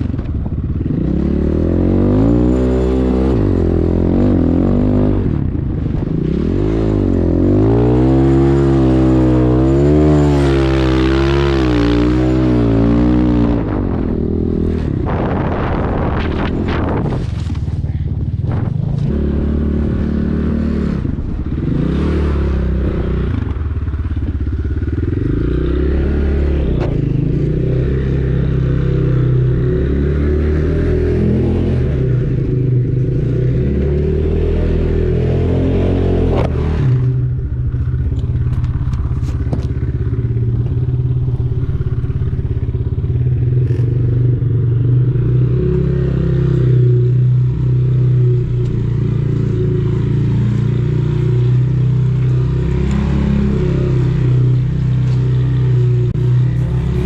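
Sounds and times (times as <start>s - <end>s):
motorcycle engine revving: 0.0s - 57.0s
clatter and clicks: 37.7s - 41.6s.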